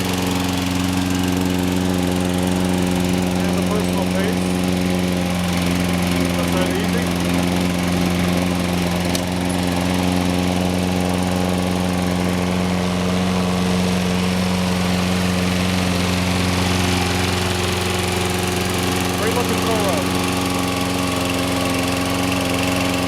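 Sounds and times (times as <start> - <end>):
lawn mower engine running: 0.0 - 23.0.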